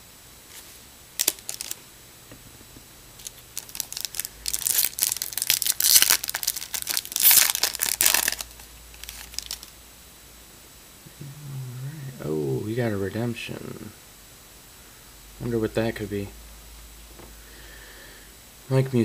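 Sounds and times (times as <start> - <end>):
card pack wrapper tearing: 1.2 - 1.8, 3.2 - 9.7.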